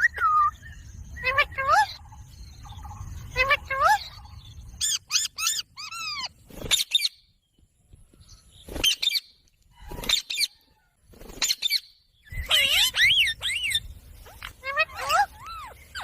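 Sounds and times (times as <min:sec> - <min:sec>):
parrot shrill calls: 0:01.2 - 0:02.1, 0:04.8 - 0:07.1, 0:11.4 - 0:16.0.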